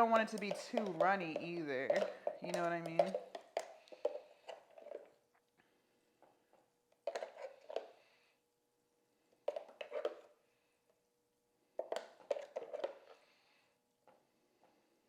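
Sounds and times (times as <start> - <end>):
batter stirred in a bowl: 0.0 - 5.5, 6.2 - 8.2, 9.3 - 10.4, 11.7 - 14.3.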